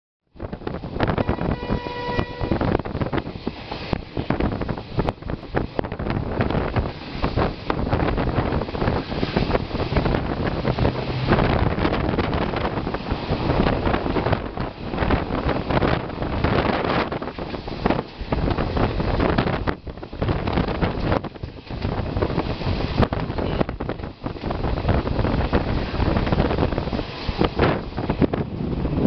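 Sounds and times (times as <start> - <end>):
wind buffeting microphone: 0.3 - 29.0
express train rushing past: 0.5 - 29.0
locomotive horn: 1.1 - 2.8, 10.9 - 11.8.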